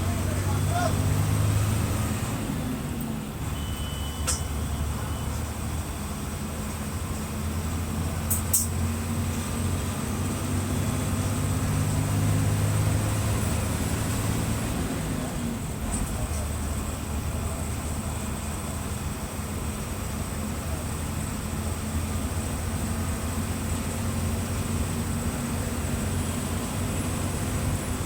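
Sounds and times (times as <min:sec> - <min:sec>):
bus diesel engine droning: 0:00.0 - 0:28.0.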